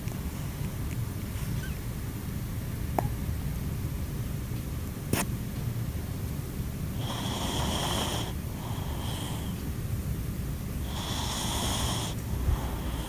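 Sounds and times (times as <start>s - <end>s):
cat snoring with whistle: 7.0s - 9.6s, 10.8s - 13.0s
soft breath: 7.0s - 9.7s, 10.8s - 13.0s.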